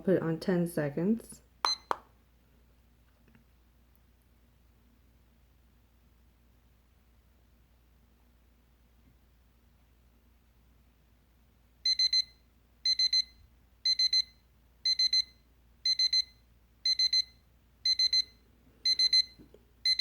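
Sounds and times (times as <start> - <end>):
kitchen timer alarm beeping: 1.7 - 2.0, 11.8 - 20.0.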